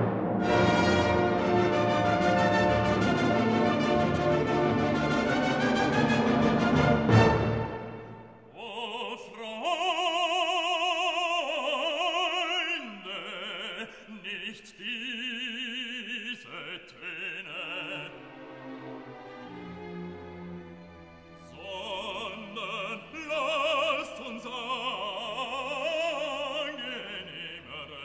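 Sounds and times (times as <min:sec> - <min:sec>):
orchestra playing: 0:00.0 - 0:08.4, 0:18.0 - 0:23.0
operatic voice singing: 0:08.5 - 0:18.5, 0:21.4 - 0:28.0.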